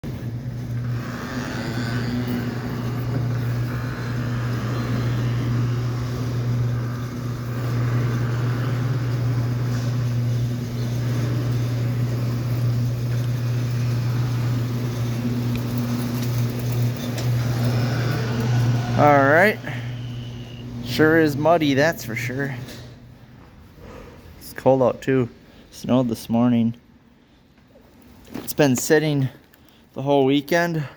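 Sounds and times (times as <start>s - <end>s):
engine running steadily: 0.1s - 21.2s.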